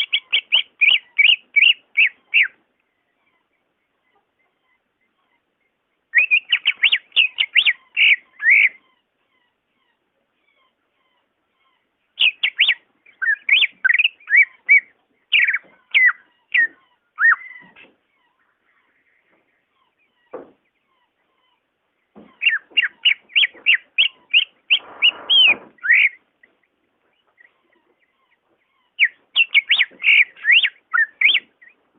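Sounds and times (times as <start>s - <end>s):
bird singing whistled notes: 0.0s - 2.6s, 6.1s - 8.8s, 12.2s - 17.6s, 22.4s - 26.2s, 29.0s - 31.8s.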